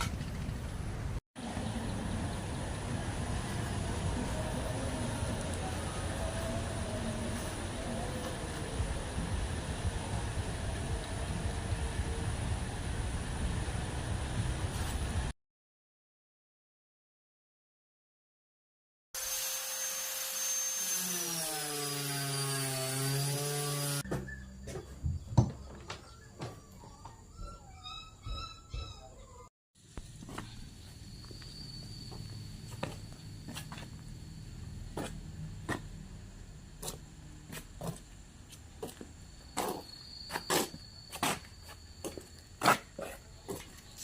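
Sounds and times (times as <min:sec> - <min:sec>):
power tool motor whining: 0:19.2 - 0:24.0.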